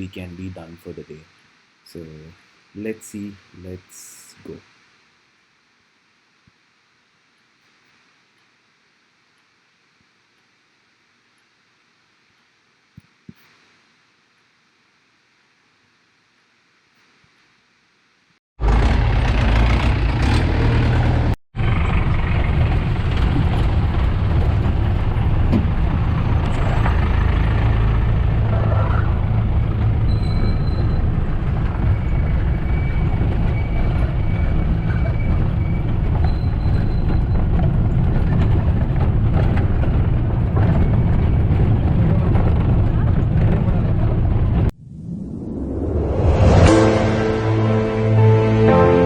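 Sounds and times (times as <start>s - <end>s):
vehicle engine running: 18.6s - 36.4s
wind rumble on microphone: 21.6s - 46.5s.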